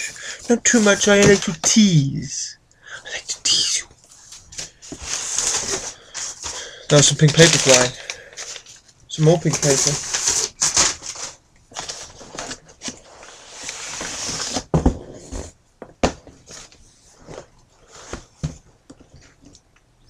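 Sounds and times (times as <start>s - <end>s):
tissue paper rustling: 4.2s - 14.6s.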